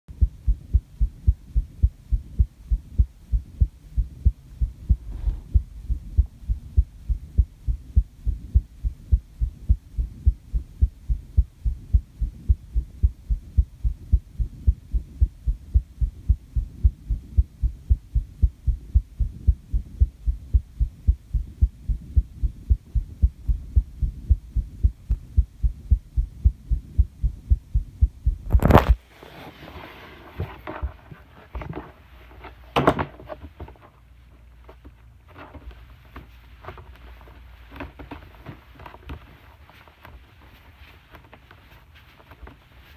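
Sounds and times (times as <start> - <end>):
heartbeat thuds: 0.1 - 29.0.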